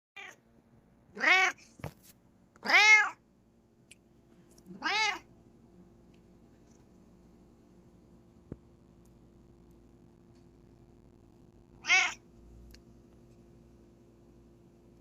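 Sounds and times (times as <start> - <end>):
cat meowing: 0.2 - 0.4, 1.2 - 1.6, 2.6 - 3.2, 4.8 - 5.3, 11.8 - 12.2.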